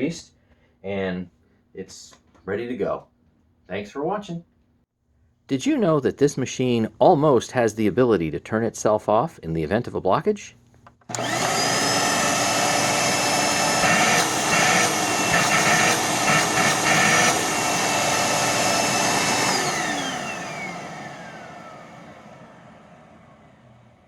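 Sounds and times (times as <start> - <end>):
vacuum cleaner whining: 11.1 - 24.0
vacuum motor spinning down: 11.1 - 24.0.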